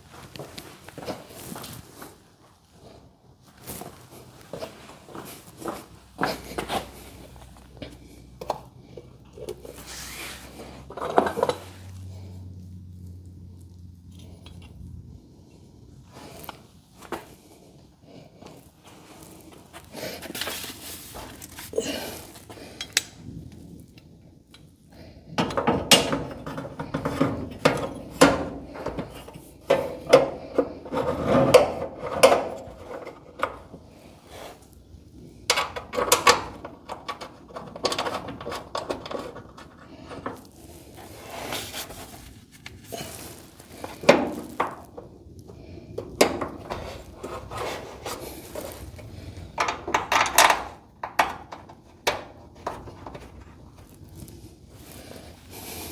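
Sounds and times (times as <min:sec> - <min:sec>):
metal hinge parts clicking: 0:22.8 - 0:23.2, 0:49.6 - 0:52.8.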